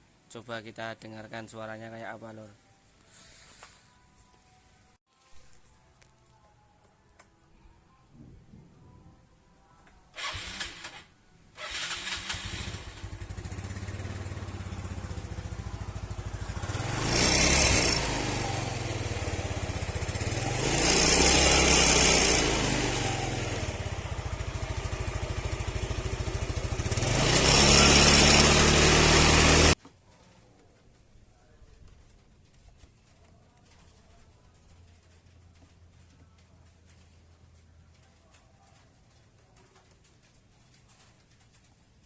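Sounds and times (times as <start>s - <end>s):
scooter engine idling and revving: 10.2s - 11.0s, 11.6s - 29.8s.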